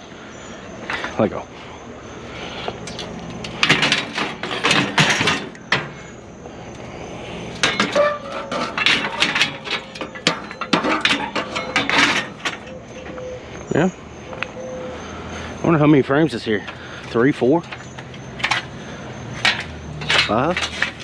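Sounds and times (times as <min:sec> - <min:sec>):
bed frames knocking and clanking: 0:03.5 - 0:06.0, 0:07.6 - 0:12.7.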